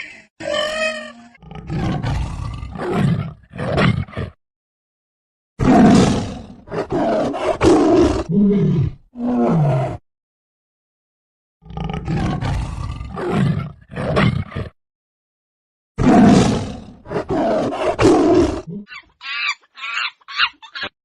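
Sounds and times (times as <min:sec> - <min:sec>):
big cat roaring and growling: 0:01.4 - 0:04.4, 0:05.6 - 0:10.0, 0:11.6 - 0:14.8, 0:16.0 - 0:18.9.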